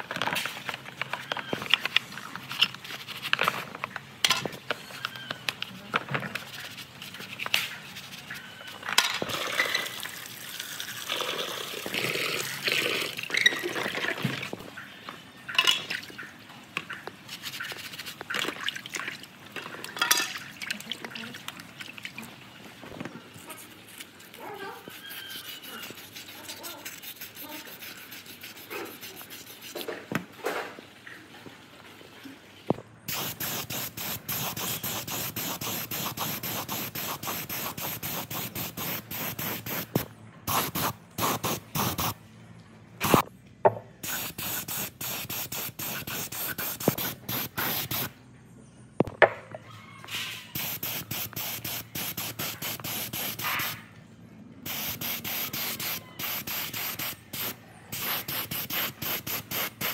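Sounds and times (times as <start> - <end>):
rapid rubbing strokes: 24.2 - 29.8.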